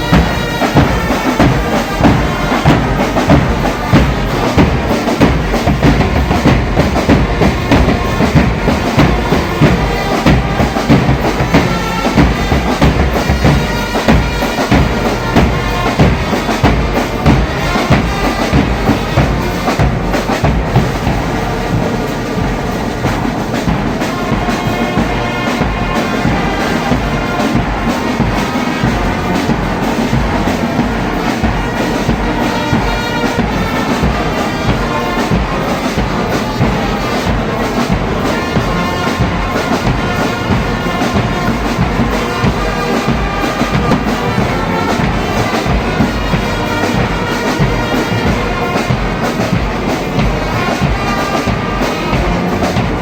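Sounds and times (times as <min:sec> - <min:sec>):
brass band playing: 0:00.0 - 0:53.0
steady drumming: 0:00.0 - 0:53.0.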